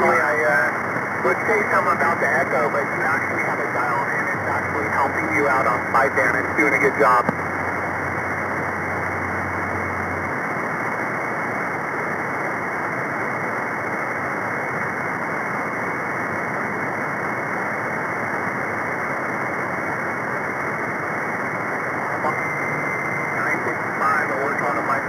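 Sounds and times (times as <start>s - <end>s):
low hum: 0.0s - 12.1s, 21.6s - 25.0s
radio receiver static hiss: 0.0s - 25.0s.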